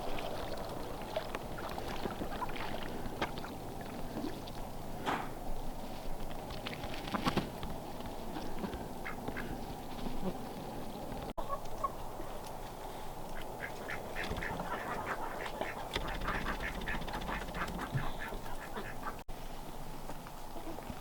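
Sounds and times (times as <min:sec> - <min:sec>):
ducks quacking: 0:13.4 - 0:19.2.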